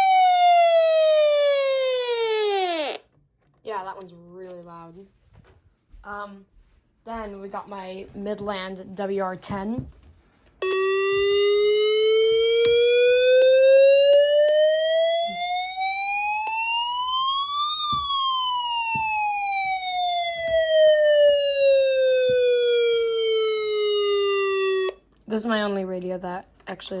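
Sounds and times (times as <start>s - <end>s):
siren tone rising and falling: 0.0s - 3.0s, 10.6s - 25.0s.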